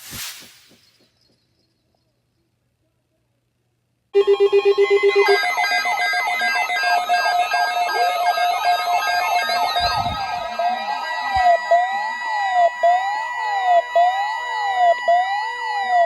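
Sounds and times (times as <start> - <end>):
layered alarm tones: 4.2 - 16.0
rapid electronic beeping: 4.2 - 16.0.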